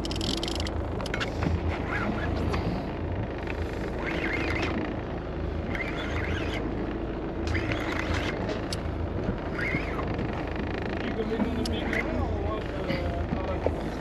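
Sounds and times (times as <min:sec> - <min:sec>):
boat engine running: 0:00.0 - 0:14.0.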